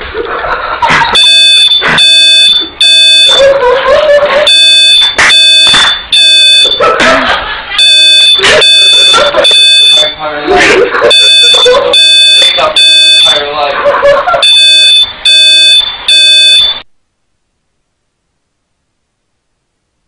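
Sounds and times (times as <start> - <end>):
smoke alarm beeping: 1.1 - 3.7, 4.4 - 6.8, 7.7 - 10.2, 11.0 - 13.5, 14.4 - 16.8.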